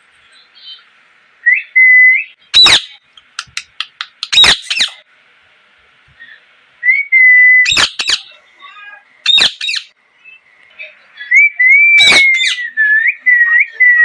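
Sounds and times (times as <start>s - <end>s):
parrot whistle: 1.4s - 3.0s, 4.2s - 5.0s, 6.8s - 8.3s, 9.2s - 9.9s, 11.3s - 14.0s
parrot harsh screeches: 2.6s - 3.0s, 4.2s - 5.0s, 7.7s - 8.3s, 9.3s - 9.9s, 12.0s - 12.6s
parrot chirps: 2.6s - 5.0s, 7.6s - 8.3s, 9.2s - 9.9s, 11.3s - 12.7s.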